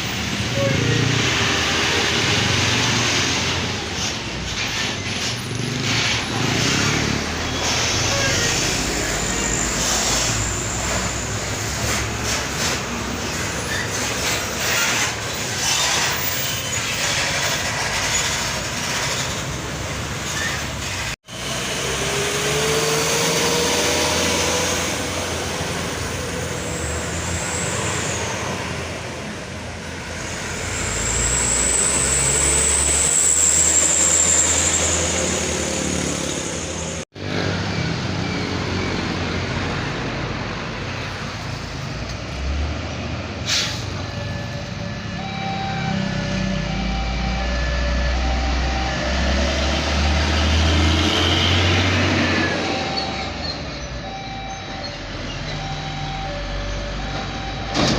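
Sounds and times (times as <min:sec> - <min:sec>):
heavy trucks passing on road: 0:00.0 - 0:57.9.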